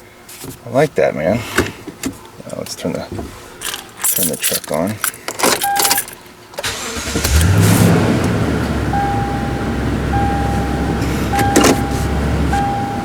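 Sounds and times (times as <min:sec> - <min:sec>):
car engine starting and idling: 0:06.6 - 0:13.0
electronic chime beeping: 0:08.9 - 0:13.0.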